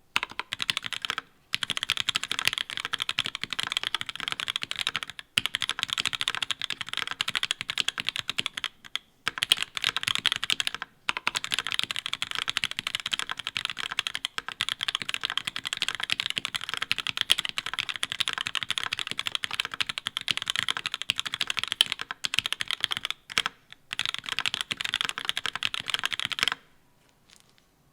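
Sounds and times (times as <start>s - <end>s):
typing on mechanical keyboard: 0.2s - 26.6s.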